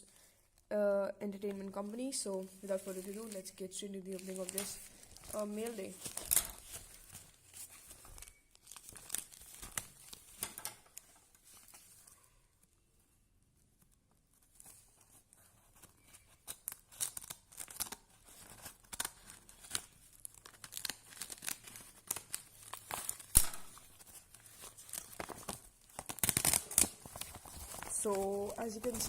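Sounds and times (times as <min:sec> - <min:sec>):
paper packaging tearing: 0:15.8 - 0:29.0.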